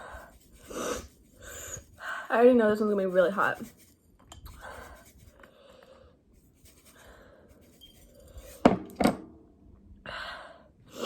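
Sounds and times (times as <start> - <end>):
woman breathing: 0.0 - 2.3, 6.9 - 7.6, 10.0 - 11.0.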